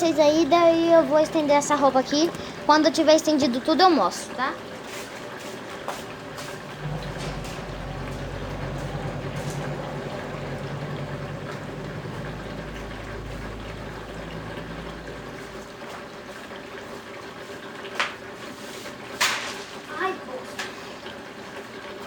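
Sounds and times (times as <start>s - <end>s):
washing machine running: 0.0s - 22.0s
water pouring in: 4.6s - 19.9s
low hum: 6.1s - 16.0s.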